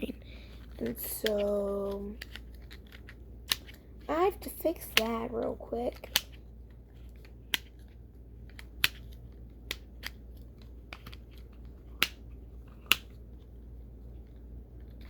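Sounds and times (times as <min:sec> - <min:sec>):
plastic toy pieces clicking: 0:05.9 - 0:06.4.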